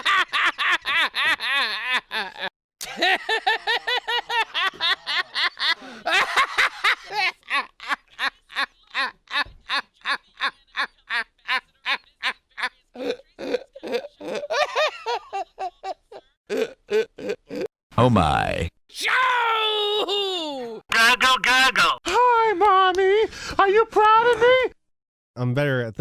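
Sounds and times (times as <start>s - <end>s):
person laughing: 0.0s - 17.7s.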